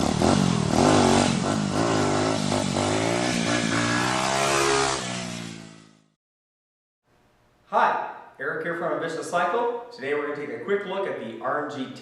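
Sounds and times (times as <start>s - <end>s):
motorcycle engine revving: 0.0s - 6.2s.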